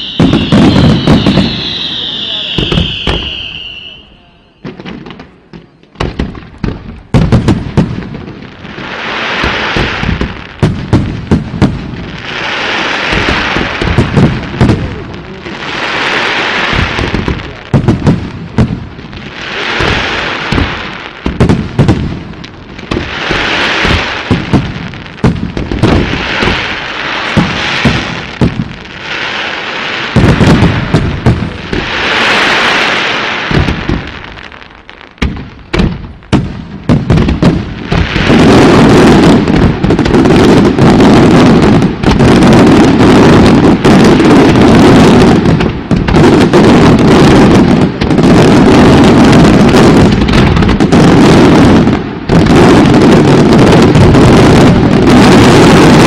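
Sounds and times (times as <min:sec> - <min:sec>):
fireworks hissing: 0:00.0 - 0:05.2, 0:08.6 - 0:10.5, 0:11.3 - 0:18.0, 0:19.1 - 0:56.0
fireworks shell bursts booming: 0:00.0 - 0:07.9.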